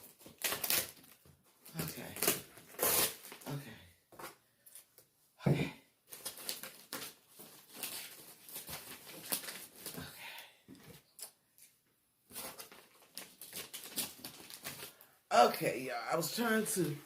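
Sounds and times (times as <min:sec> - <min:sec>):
packaging rustling and crinkling: 0:06.1 - 0:10.1, 0:12.3 - 0:15.1.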